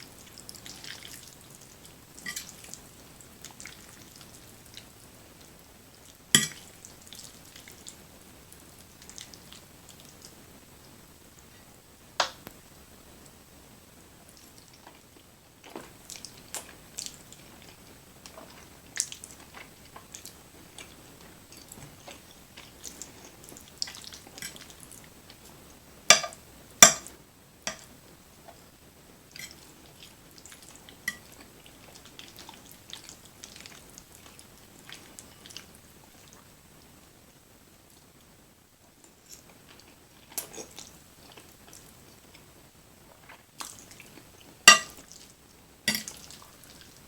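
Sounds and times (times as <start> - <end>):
close-up chewing: 0.0 - 10.4, 14.2 - 25.8, 29.3 - 36.5, 39.0 - 47.0.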